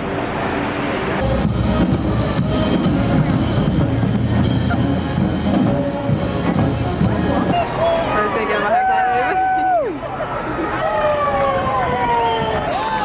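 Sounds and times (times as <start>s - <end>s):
heavy bass: 1.1s - 8.2s
drum kit steady beat: 1.2s - 7.8s.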